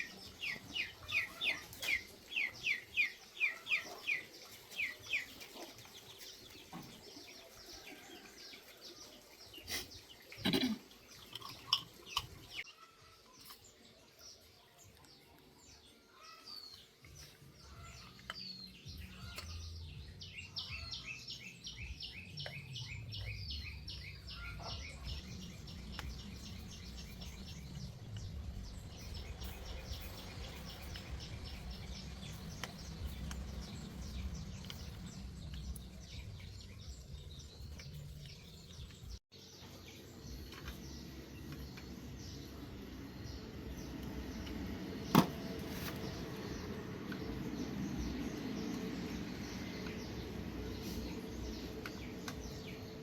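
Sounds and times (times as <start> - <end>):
bird chirping: 0.0 - 8.1, 9.1 - 53.0
low background rumble: 21.8 - 39.2.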